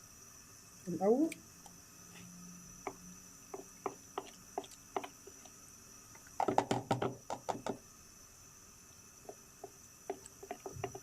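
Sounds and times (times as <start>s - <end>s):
spoon tapping against bowl: 10.1s - 11.0s.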